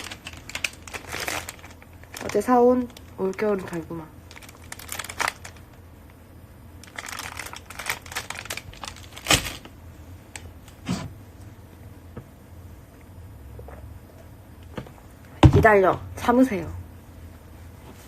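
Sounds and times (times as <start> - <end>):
packaging rustling and crinkling: 0.0 - 5.8, 6.8 - 10.5.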